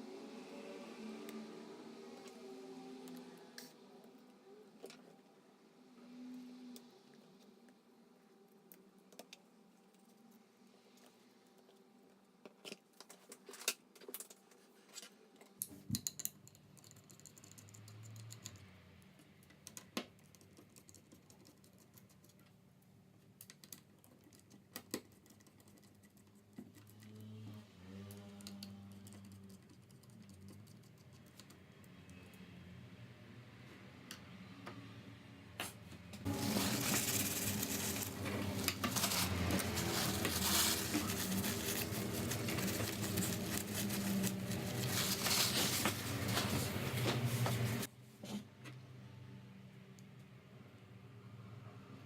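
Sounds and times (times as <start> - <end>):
soft handling noise: 35.6 - 48.5.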